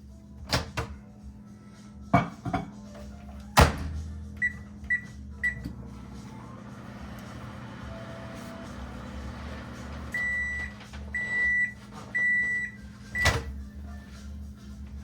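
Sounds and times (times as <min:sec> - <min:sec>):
microwave oven humming: 0:02.8 - 0:15.0
keypad beeps: 0:10.2 - 0:13.5.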